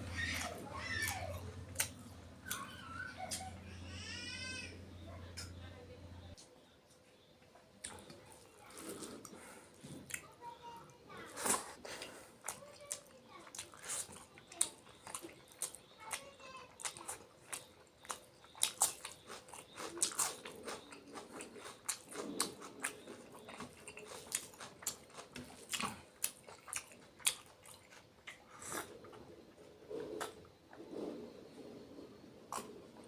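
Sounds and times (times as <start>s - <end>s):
person chewing food: 0.0s - 3.5s, 11.4s - 31.4s, 32.4s - 33.0s.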